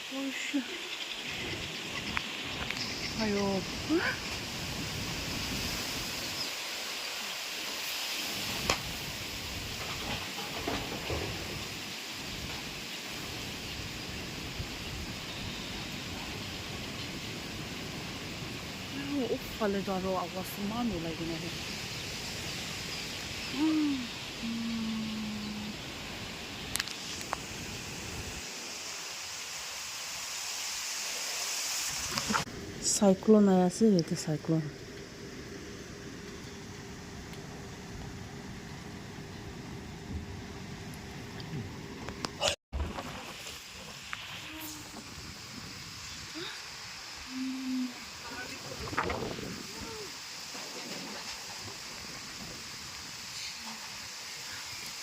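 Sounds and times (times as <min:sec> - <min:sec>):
heavy rain: 0:00.0 - 0:33.0, 0:41.6 - 0:55.0
wind: 0:00.0 - 0:55.0
storm wind rushing: 0:01.2 - 0:06.6, 0:47.9 - 0:53.3
wind buffeting microphone: 0:43.9 - 0:53.3.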